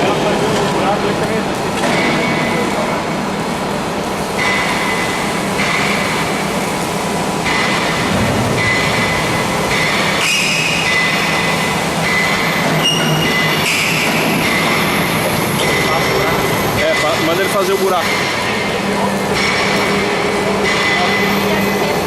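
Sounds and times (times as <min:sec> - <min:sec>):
drilling machine running: 0:04.4 - 0:22.0
high-pitched metallic squeal: 0:08.6 - 0:14.2.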